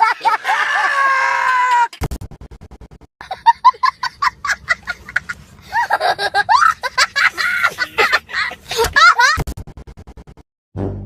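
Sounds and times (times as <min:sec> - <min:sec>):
high-pitched cackling laughter: 0:00.0 - 0:01.2, 0:03.2 - 0:09.4.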